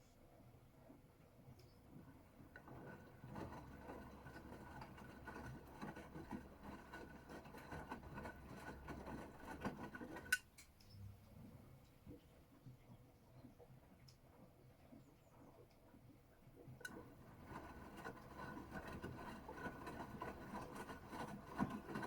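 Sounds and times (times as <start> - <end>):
washing machine tumbling: 1.8 - 10.4
water and laundry sloshing: 2.0 - 10.3, 16.9 - 22.0.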